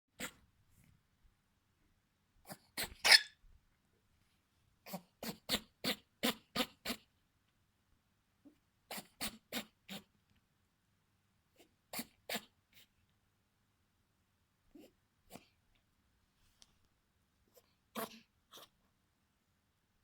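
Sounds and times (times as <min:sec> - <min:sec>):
pet sneezing: 0:00.2 - 0:00.4, 0:02.5 - 0:03.3, 0:04.8 - 0:07.1, 0:08.9 - 0:10.1, 0:11.6 - 0:12.9, 0:17.5 - 0:18.7.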